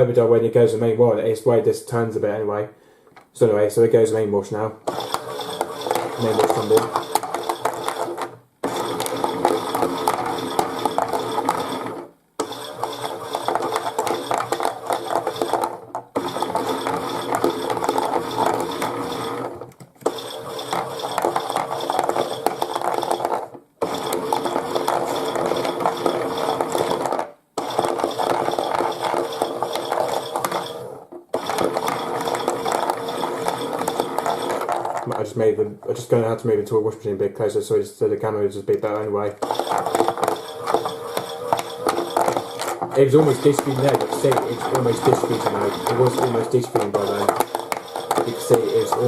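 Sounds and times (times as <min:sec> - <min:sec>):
toy washing machine whirring rattle: 0:04.8 - 0:35.2, 0:39.4 - 0:49.0.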